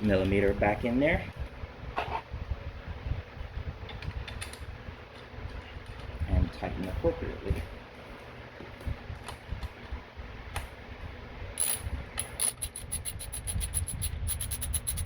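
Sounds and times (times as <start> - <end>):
ratchet wrench clicking: 11.6 - 15.0
scattered clicks and knocks: 11.6 - 15.0.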